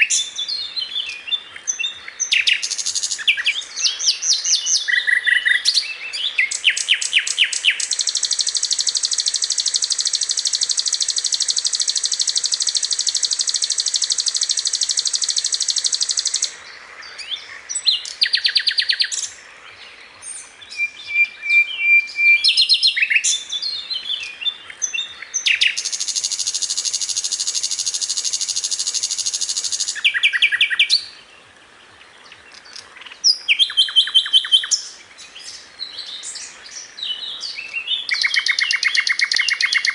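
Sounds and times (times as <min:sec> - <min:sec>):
flycatcher song trills: 0:00.0 - 0:31.3.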